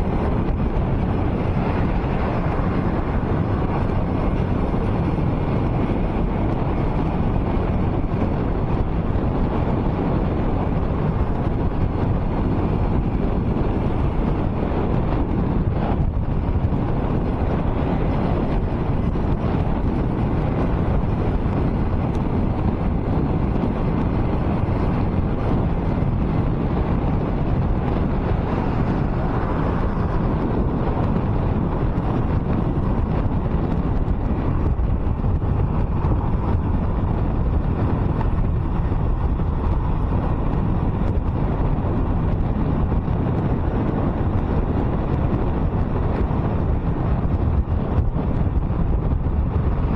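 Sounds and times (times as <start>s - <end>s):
car road noise at highway speed: 0.0s - 49.9s
wind buffeting microphone: 0.0s - 49.9s
wind rush: 0.0s - 49.9s.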